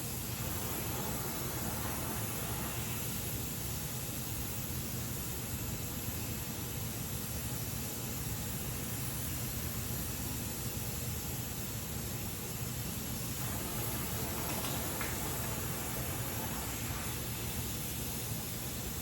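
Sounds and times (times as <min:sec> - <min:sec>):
welding torch flame hissing: 0:00.0 - 0:04.5, 0:13.1 - 0:19.0.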